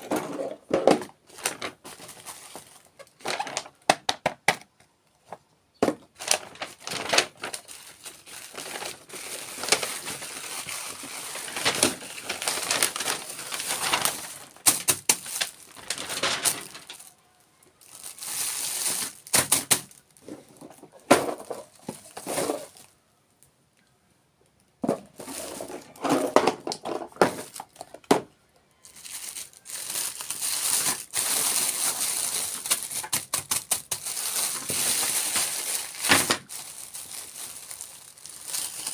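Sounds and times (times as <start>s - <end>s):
packaging crinkling: 0.0s - 4.2s, 6.1s - 22.9s, 28.8s - 38.9s.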